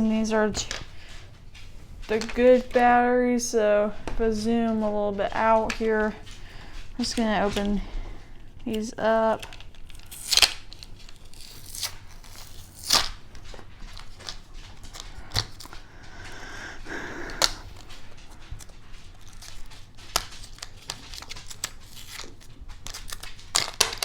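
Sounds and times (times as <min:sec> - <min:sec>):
packaging tearing and crinkling: 0:09.3 - 0:15.8, 0:18.6 - 0:24.0.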